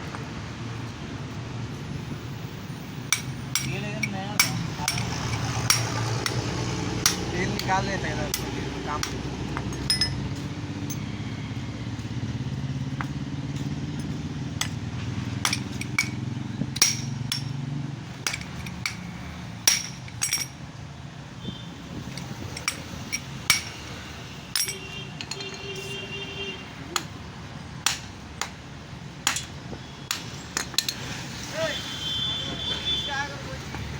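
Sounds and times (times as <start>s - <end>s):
metal knocks and clinks: 3.1s - 11.1s, 13.9s - 20.7s, 22.0s - 25.9s, 30.5s - 31.0s.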